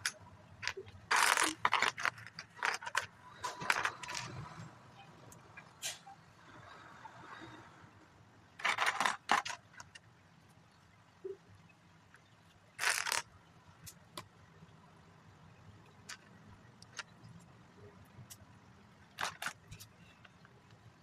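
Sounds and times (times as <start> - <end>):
plastic toy bricks rattling: 0.0 - 4.5, 8.6 - 10.0, 12.8 - 13.3, 19.2 - 19.9
small plastic clicks: 12.1 - 14.3.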